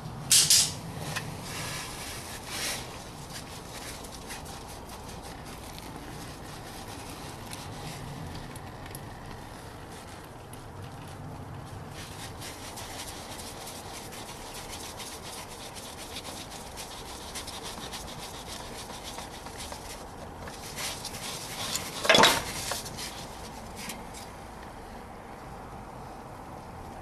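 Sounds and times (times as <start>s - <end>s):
loud scrape or clatter: 0.3s - 3.0s, 20.5s - 24.2s
tools scraping and clinking on metal: 20.4s - 24.4s.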